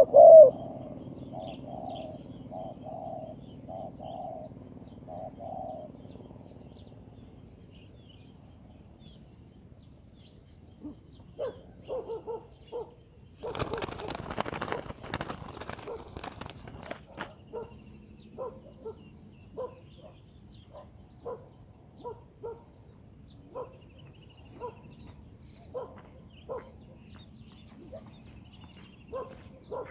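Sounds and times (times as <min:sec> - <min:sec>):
doves cooing: 0:00.0 - 0:06.0, 0:13.4 - 0:17.8
small birds chirping faintly: 0:00.5 - 0:29.9
loud noisy rustling: 0:13.4 - 0:17.4.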